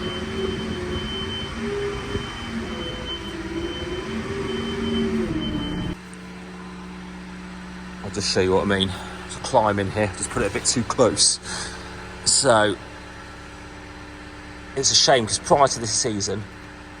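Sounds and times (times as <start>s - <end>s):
steady high beep: 0.0s - 6.0s
tractor engine running: 0.0s - 17.0s.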